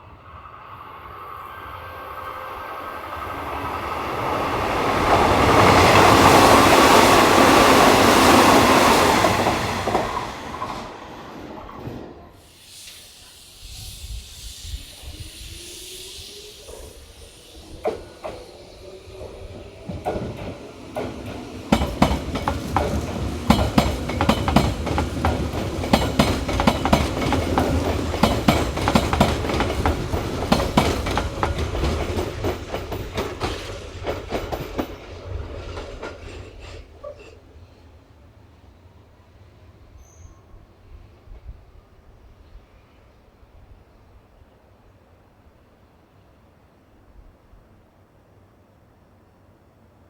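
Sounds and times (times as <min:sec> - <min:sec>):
train wheels clicking over rail joints: 0:04.0 - 0:37.4.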